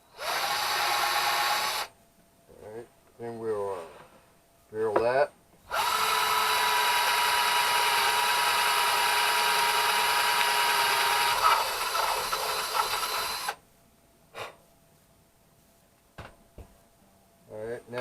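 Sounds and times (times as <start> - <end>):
electric drill boring into wood: 0.1 - 1.9, 5.7 - 13.6.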